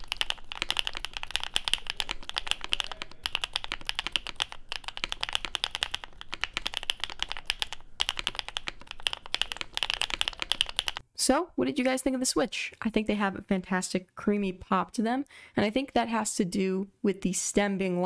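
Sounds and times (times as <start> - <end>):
fast mechanical keyboard typing: 0.0 - 11.0.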